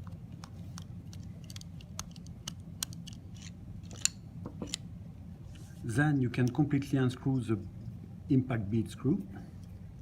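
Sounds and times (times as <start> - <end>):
small clicks and scrapes of metal: 0.0 - 4.8.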